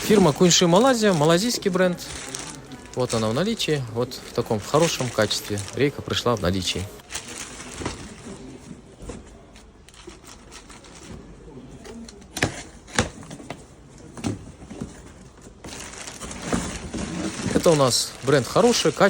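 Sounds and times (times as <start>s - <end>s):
faint rustling: 0.0s - 19.0s
box knocks and clicks: 12.3s - 15.1s.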